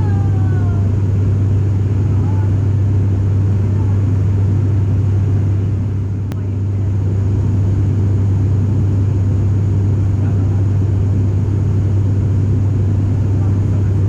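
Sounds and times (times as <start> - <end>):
propeller drone in cabin: 0.0 - 14.0.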